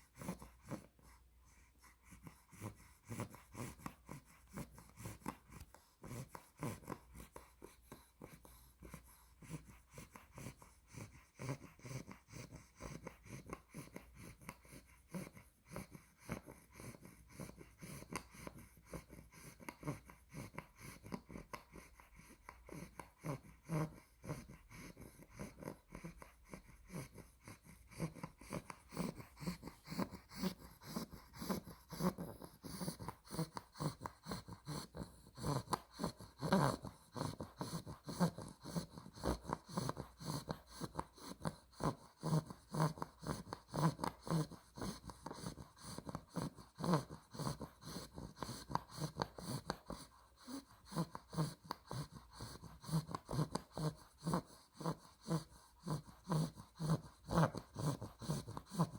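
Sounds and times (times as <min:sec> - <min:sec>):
puppy snoring: 0:00.0 - 0:58.9.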